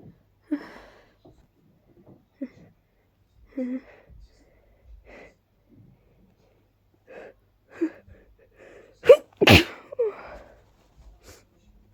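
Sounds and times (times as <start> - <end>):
loud sneeze: 9.0 - 10.1.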